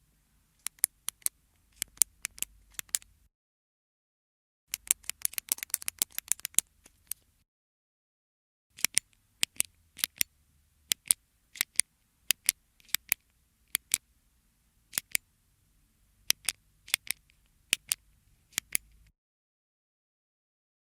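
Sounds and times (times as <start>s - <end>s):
click pen clicking: 0.6s - 3.1s, 4.7s - 7.2s, 8.8s - 10.3s, 10.9s - 13.2s, 14.9s - 15.2s, 16.3s - 19.0s.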